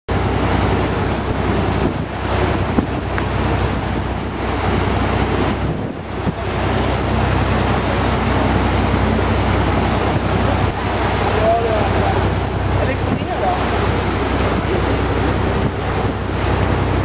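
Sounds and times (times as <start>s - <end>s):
boat engine low hum: 0.1s - 17.0s
water rushing: 0.1s - 17.0s
wind noise on microphone: 0.1s - 17.0s.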